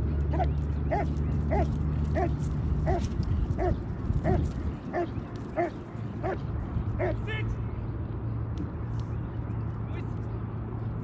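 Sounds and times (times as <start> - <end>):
dog yipping: 0.3 - 6.4.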